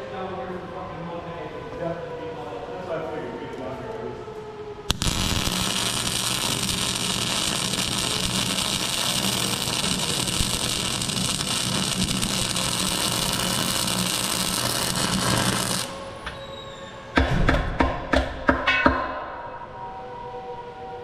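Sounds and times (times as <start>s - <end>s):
arc welder crackling hiss: 4.9s - 16.0s.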